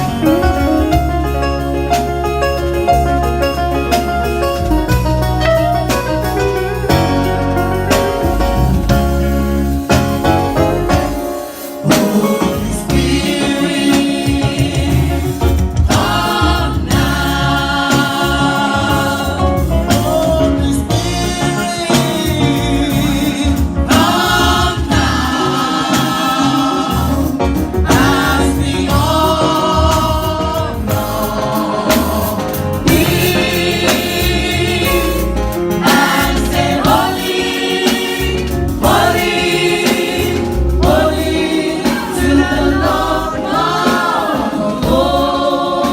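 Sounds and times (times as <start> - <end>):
band accompaniment: 0.0 - 45.9
gospel choir singing: 0.0 - 45.9.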